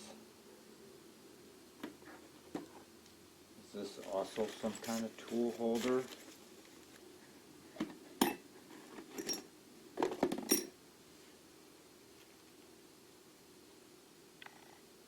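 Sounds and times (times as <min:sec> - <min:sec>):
faint steady hum: 0:00.0 - 0:15.0
metal tooling clinking: 0:08.2 - 0:08.4, 0:09.1 - 0:09.5, 0:10.5 - 0:10.7.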